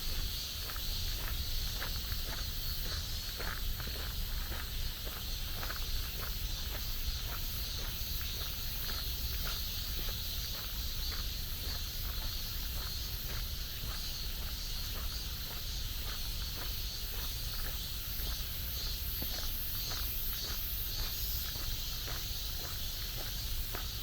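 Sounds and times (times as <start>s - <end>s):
high-pitched insect chorus: 0.0s - 24.0s
footsteps walking: 0.1s - 18.4s.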